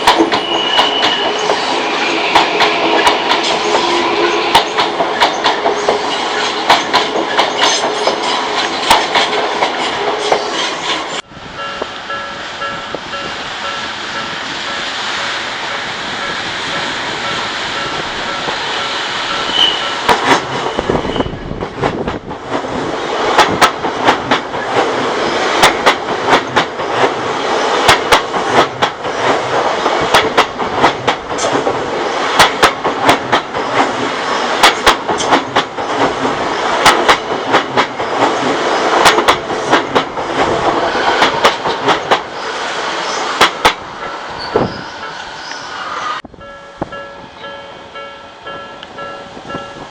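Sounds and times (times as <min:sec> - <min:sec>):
train wheels clacking over rail joints: 0:00.0 - 0:11.2, 0:16.2 - 0:42.3, 0:43.3 - 0:44.2
crossing warning bell ringing: 0:11.2 - 0:21.6, 0:43.9 - 0:49.9.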